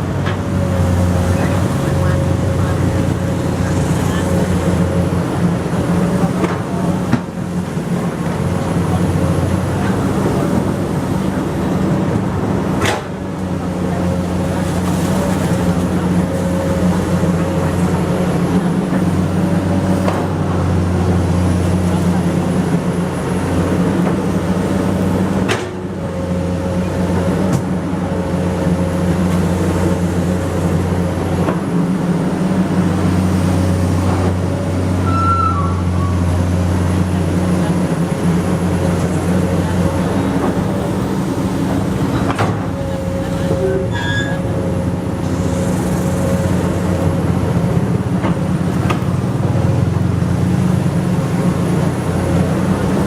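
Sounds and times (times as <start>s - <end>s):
excavator diesel engine running: 0.0s - 53.0s
faint hydraulic whine: 34.9s - 47.3s.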